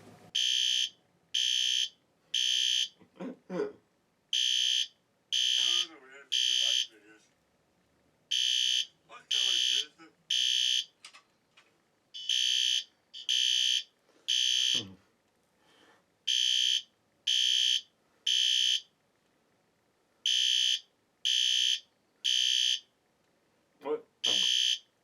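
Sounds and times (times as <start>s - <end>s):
fire alarm horn blasts: 0.4s - 3.0s, 4.4s - 6.9s, 8.3s - 10.9s, 12.2s - 14.8s, 16.3s - 18.8s, 20.3s - 22.8s, 24.2s - 24.8s.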